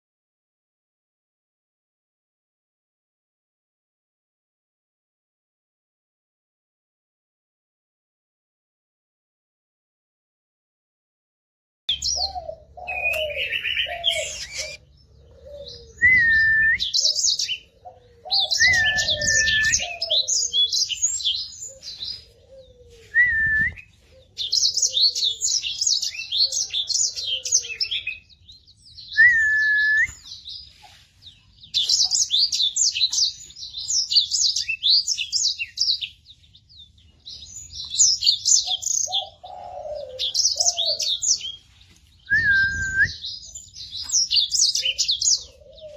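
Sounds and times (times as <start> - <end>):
canary singing: 11.9 - 42.0, 42.7 - 45.9.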